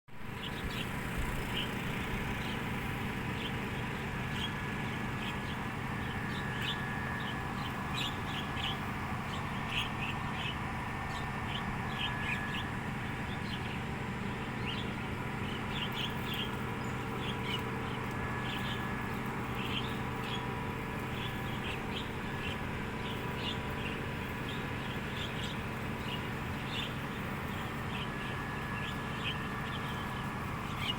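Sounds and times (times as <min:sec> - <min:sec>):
steady low hum: 0:00.1 - 0:30.9
birds chirping and squawking: 0:00.4 - 0:30.9.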